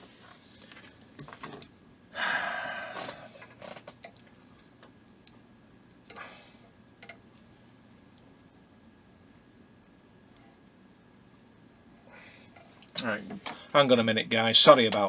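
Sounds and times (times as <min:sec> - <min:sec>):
person sighing heavily: 0:02.2 - 0:03.4.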